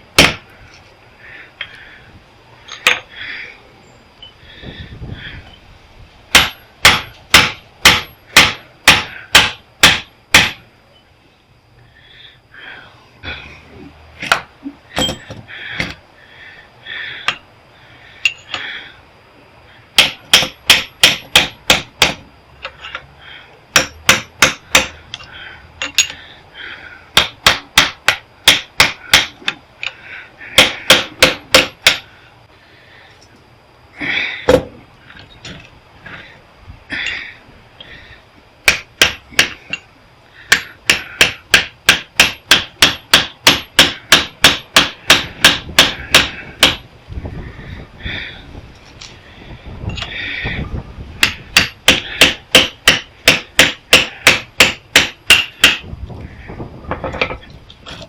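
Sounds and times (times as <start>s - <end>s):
hammer striking steel: 6.3s - 10.6s, 20.0s - 22.2s, 23.7s - 25.0s, 30.6s - 32.0s, 40.5s - 46.8s, 51.2s - 55.8s.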